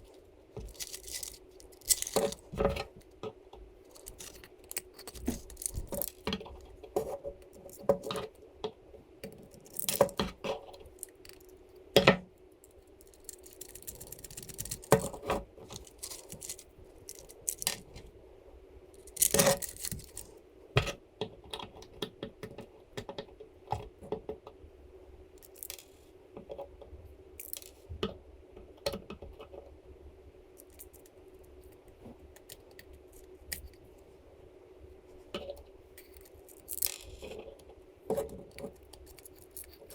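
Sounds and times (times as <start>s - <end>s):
faint steady hum: 0.0s - 39.9s
plastic parts and screws clattering: 0.6s - 3.0s, 3.9s - 8.3s, 13.0s - 18.0s, 19.0s - 20.9s.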